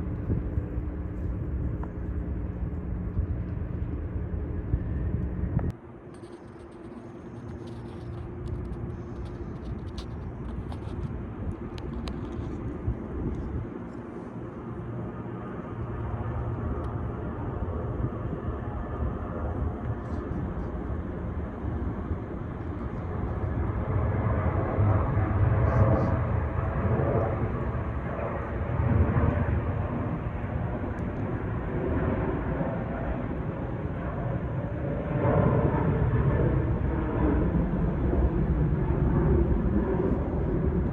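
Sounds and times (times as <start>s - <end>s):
jet engine rumble: 0.0s - 40.9s.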